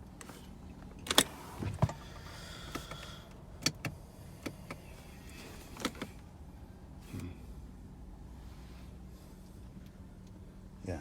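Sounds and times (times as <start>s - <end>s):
car control clicks and knocks: 2.7s - 4.9s.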